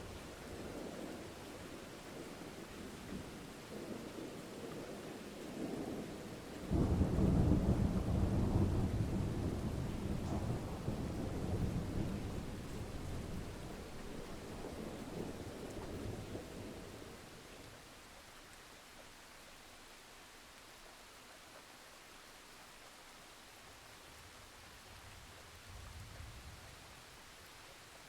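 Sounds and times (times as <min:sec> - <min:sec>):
steady rainfall: 0:00.0 - 0:28.0
thunderclap rumbling: 0:06.7 - 0:17.0.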